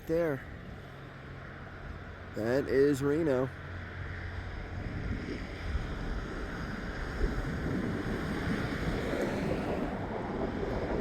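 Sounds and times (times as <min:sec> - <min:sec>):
wind blowing across microphone: 0:04.0 - 0:11.0.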